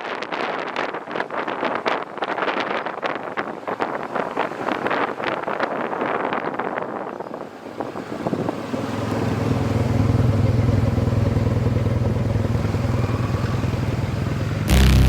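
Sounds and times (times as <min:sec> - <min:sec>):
scooter engine running: 0:09.5 - 0:15.0.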